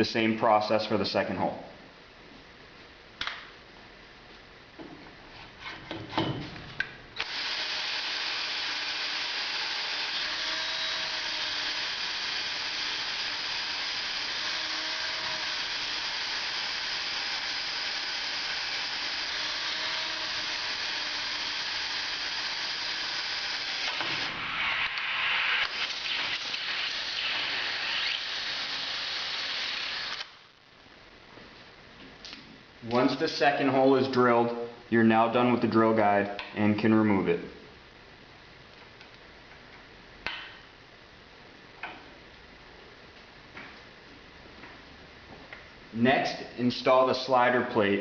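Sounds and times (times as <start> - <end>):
power drill drilling: 7.2 - 30.4.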